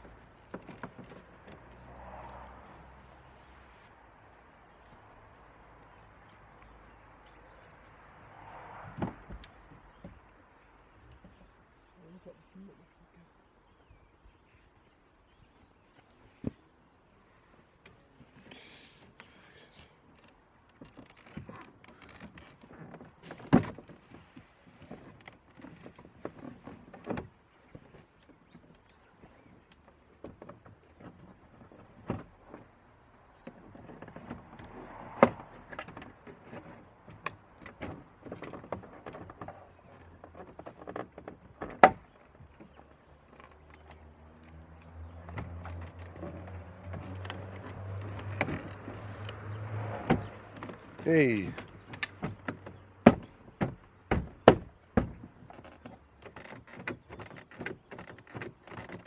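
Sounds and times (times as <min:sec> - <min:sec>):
plastic door panel clicks and knocks: 0:52.0 - 0:55.4.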